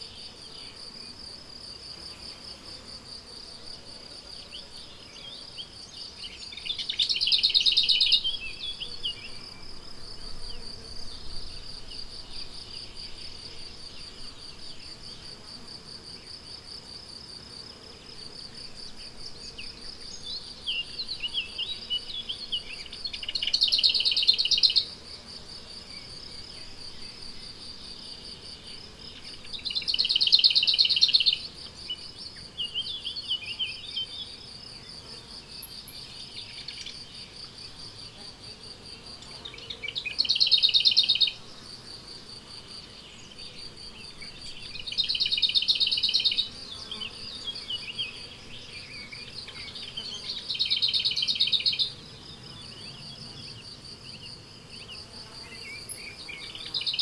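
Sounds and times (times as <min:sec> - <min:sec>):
insect buzzing bouts: 0:00.0 - 0:57.0
insects trilling: 0:18.0 - 0:57.0.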